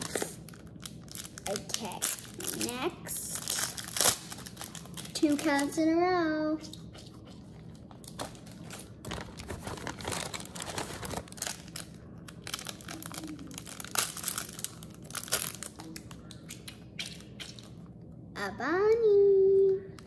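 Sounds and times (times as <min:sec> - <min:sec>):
plastic packaging crinkling: 0:00.0 - 0:05.8, 0:08.0 - 0:16.3.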